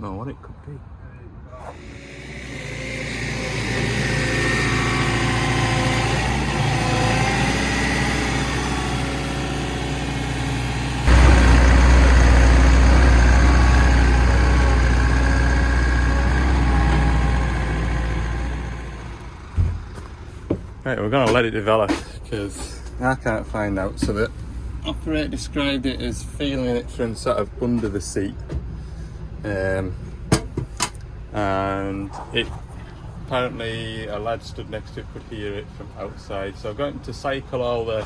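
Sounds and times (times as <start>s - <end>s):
excavator diesel engine running: 1.8s - 20.8s.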